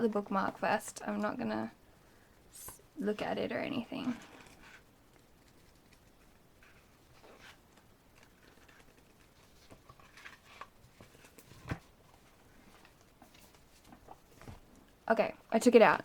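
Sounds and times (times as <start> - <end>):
paper rustling and tapping: 4.4 - 14.8.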